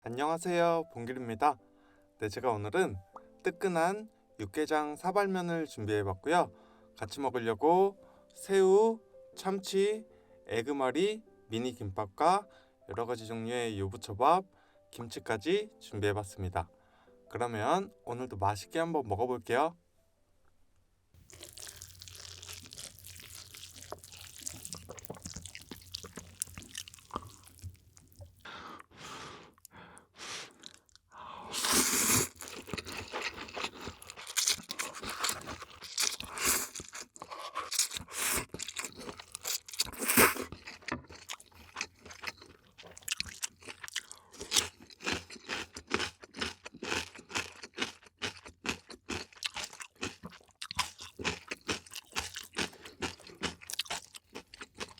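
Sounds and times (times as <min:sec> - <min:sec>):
crunchy bites and chewing: 0:21.2 - 0:29.7, 0:30.5 - 0:54.9.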